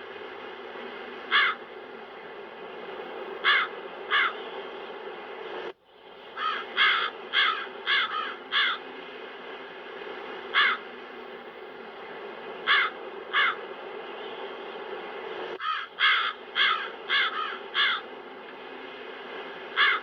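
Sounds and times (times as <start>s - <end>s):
wind: 0.0s - 20.0s
crows cawing: 1.3s - 1.6s, 3.4s - 4.4s, 6.4s - 8.9s, 10.5s - 10.8s, 12.6s - 13.6s, 15.6s - 18.1s, 19.8s - 20.0s.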